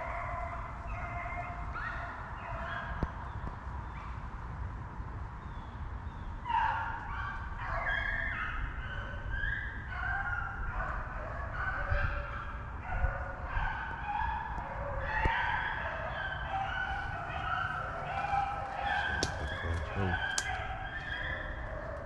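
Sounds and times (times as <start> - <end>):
hounds baying: 6.4 - 22.0.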